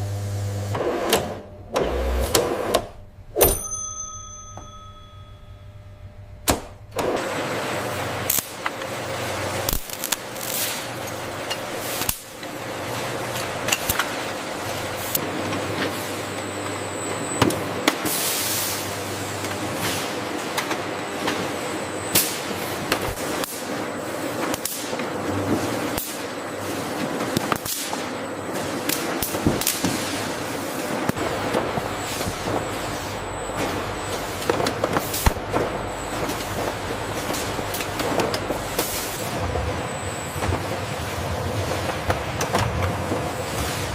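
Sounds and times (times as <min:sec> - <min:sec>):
factory machinery humming: 0:04.5 - 0:43.9
machinery clicks and knocks: 0:41.8 - 0:43.1.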